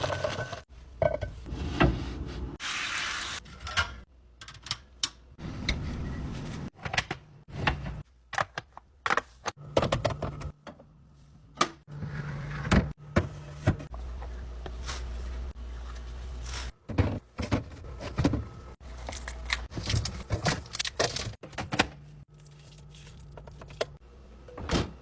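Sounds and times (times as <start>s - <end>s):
food containers clicking and knocking: 8.4s - 10.8s.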